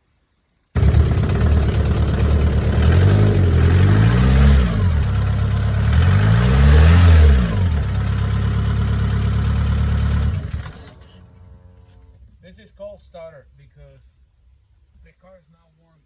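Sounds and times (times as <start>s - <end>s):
car engine revving and idling: 0.8s - 12.4s.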